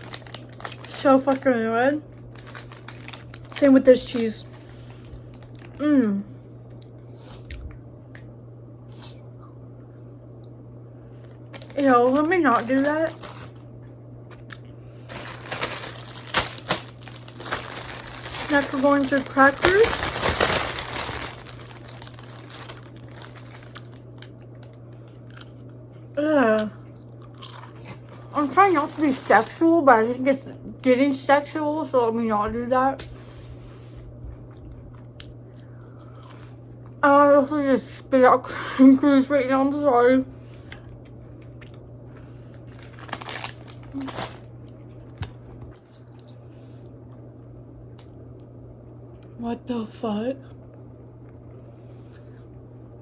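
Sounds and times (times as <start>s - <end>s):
crackers crunching while chewed: 0.0s - 1.5s, 2.1s - 5.8s, 11.2s - 25.9s, 26.6s - 29.6s, 34.2s - 37.0s, 40.7s - 46.4s
wrapper crinkling: 0.0s - 5.9s, 11.3s - 13.7s, 14.3s - 24.8s, 28.1s - 29.8s, 42.4s - 45.9s.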